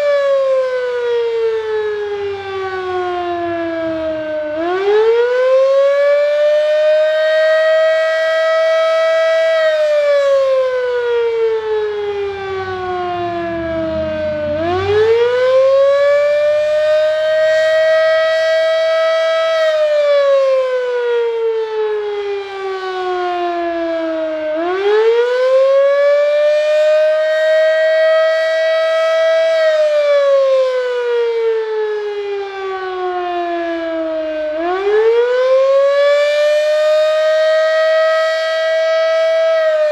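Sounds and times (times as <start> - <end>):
fire siren wailing: 0.0 - 39.9.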